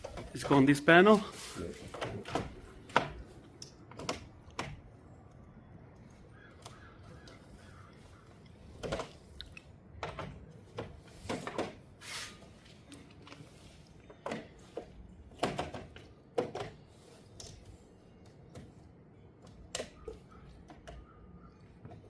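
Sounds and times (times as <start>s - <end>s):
knocks and clicks on electrical hardware: 1.9s - 4.9s, 8.7s - 9.2s, 9.9s - 11.8s, 14.0s - 16.8s.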